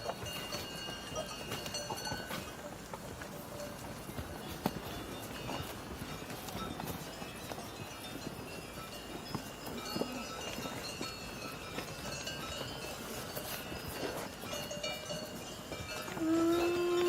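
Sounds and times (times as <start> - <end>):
cowbells clinking: 0.0 - 17.0
hooves clopping and shuffling: 0.0 - 17.0
cow mooing: 16.2 - 17.0.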